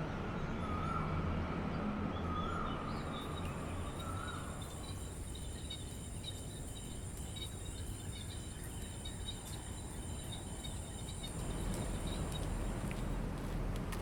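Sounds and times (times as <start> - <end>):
distant city hush: 2.9 - 14.0
frogs chirping: 3.0 - 12.8
high-pitched insect whine: 3.1 - 12.7.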